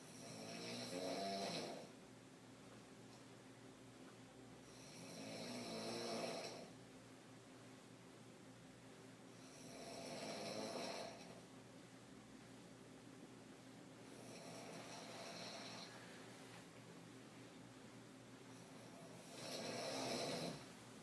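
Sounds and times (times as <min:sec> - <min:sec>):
woman snoring: 0:00.1 - 0:01.9, 0:04.7 - 0:06.8, 0:09.4 - 0:11.4, 0:14.1 - 0:16.0, 0:18.6 - 0:20.7.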